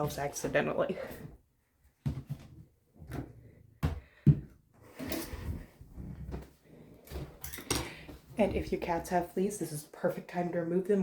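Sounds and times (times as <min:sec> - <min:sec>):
rustling and shuffling: 0:04.8 - 0:09.2.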